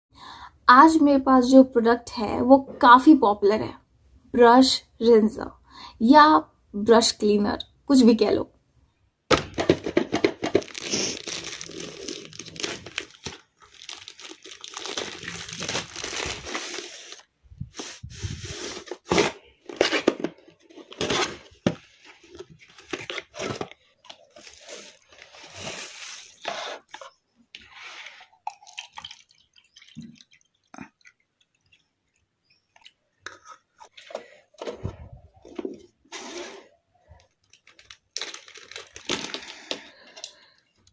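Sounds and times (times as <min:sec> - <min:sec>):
packaging crinkling and tearing: 0:10.2 - 0:26.5, 0:37.2 - 0:40.6.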